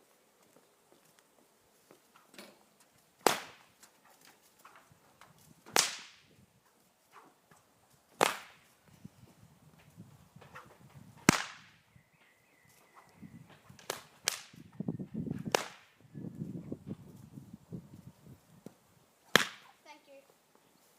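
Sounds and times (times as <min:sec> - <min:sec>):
whip cracking: 0:03.2 - 0:03.8, 0:05.7 - 0:06.3, 0:08.2 - 0:08.7, 0:10.6 - 0:11.8, 0:13.8 - 0:14.7, 0:15.5 - 0:16.0, 0:19.3 - 0:19.7.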